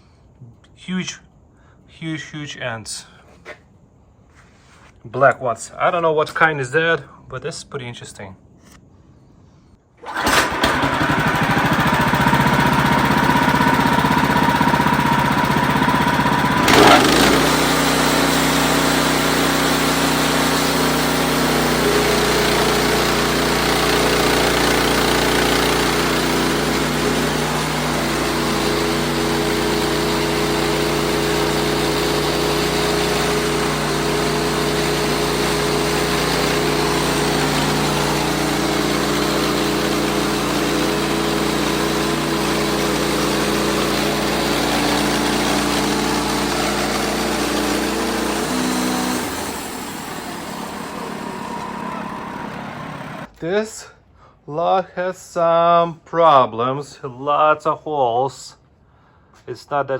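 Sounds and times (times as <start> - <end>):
sawmill engine droning: 10.0 - 53.3.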